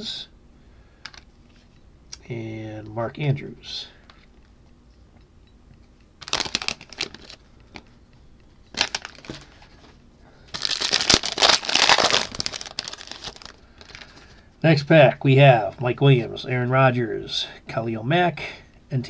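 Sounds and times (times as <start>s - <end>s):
plastic wrapper crinkling: 6.2s - 7.9s, 8.7s - 14.4s.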